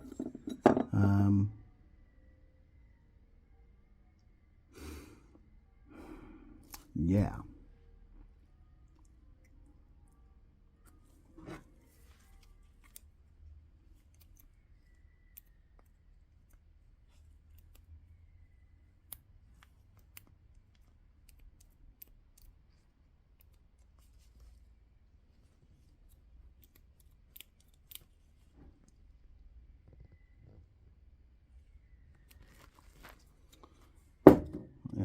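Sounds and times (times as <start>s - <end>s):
small parts clicking and tapping: 13.9s - 24.1s, 26.0s - 29.0s.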